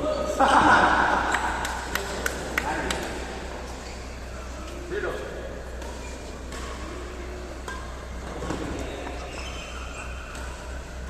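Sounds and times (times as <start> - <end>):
shoe squeaks: 7.7 - 11.0.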